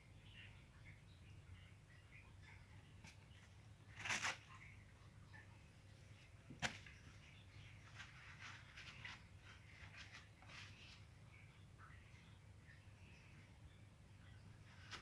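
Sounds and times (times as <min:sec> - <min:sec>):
tissue paper rustling and tearing: 0:04.0 - 0:04.4.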